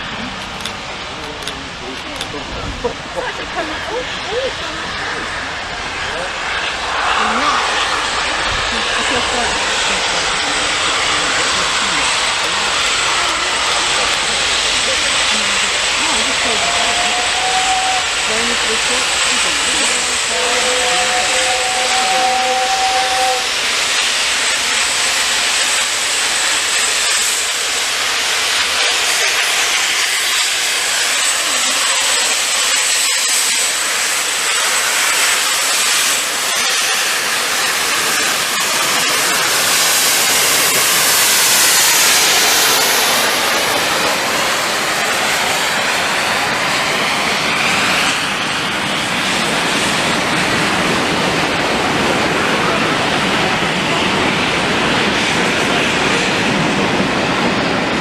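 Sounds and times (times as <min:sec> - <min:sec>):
rolling train wheels: 0:00.0 - 0:58.0
steam hiss: 0:00.0 - 0:58.0
two-note train whistle: 0:16.6 - 0:18.2, 0:20.3 - 0:23.5.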